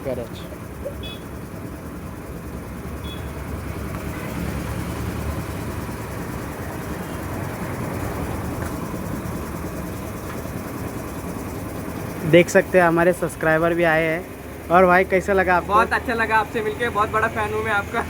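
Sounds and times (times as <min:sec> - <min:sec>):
vehicle engine running: 0:00.0 - 0:18.0.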